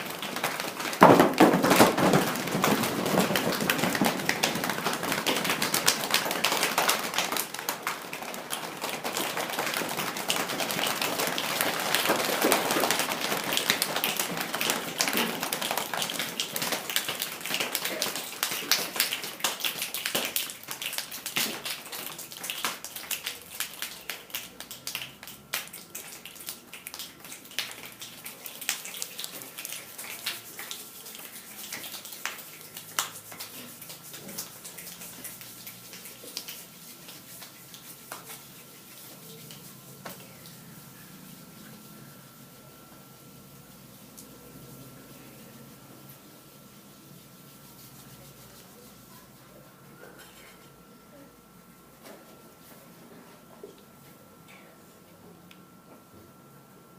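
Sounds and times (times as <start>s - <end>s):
rain patter: 0.0s - 38.3s.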